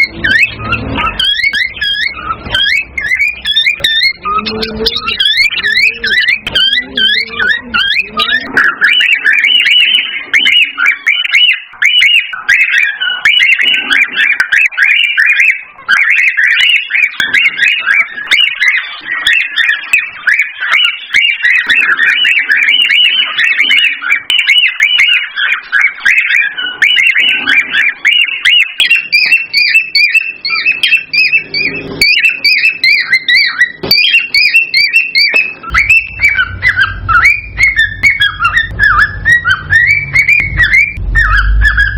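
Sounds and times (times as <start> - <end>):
cockatiels whistling and chattering: 0.0 - 41.9
low hum: 35.7 - 41.9.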